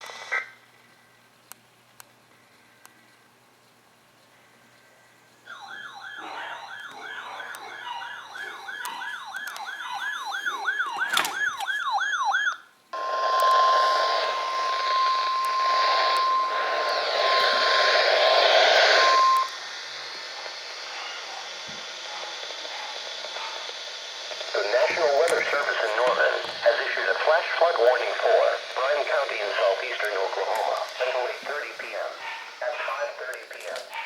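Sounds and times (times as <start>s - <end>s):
radio static: 0.0s - 0.6s, 5.5s - 11.6s, 13.0s - 34.0s
siren-style sweeping tone: 5.5s - 19.7s
steady warning alarm tone: 5.5s - 34.0s.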